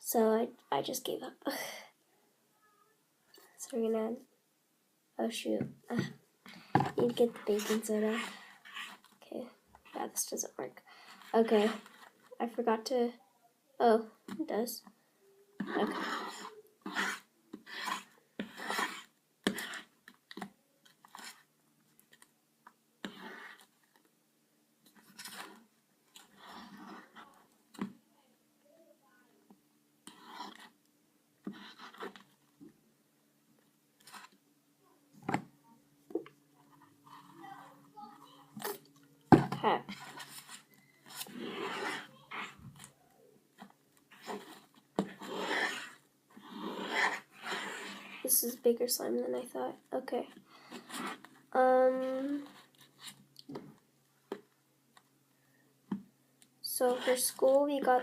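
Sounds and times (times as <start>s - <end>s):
slime squishing and scraping: 5.9s - 10.2s, 11.0s - 12.3s, 15.6s - 22.3s, 23.0s - 24.0s, 24.9s - 27.6s, 30.1s - 30.8s, 31.5s - 32.4s, 38.6s - 43.0s, 43.6s - 48.6s, 50.0s - 53.2s, 56.7s - 58.0s
utensil scraping a plate: 15.6s - 20.0s, 39.9s - 42.7s, 44.1s - 48.3s.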